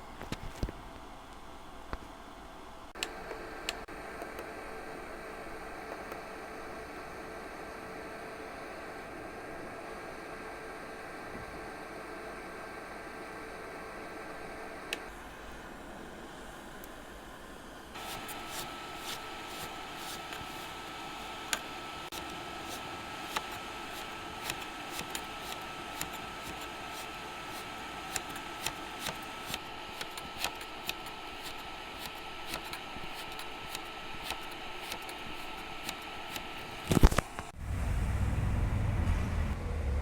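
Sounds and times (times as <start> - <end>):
steady hiss: 14.0 - 39.5
crackling clicks: 24.4 - 37.6
low rumble: 37.6 - 40.0.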